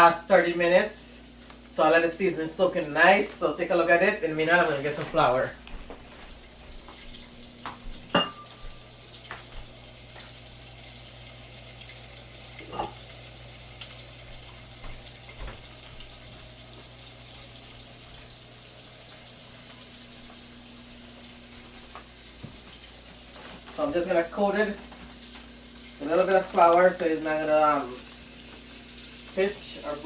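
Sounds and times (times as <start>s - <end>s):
hot fat sizzling in a pan: 0.0s - 30.0s
kitchen utensils clinking: 8.0s - 8.8s, 12.6s - 13.1s.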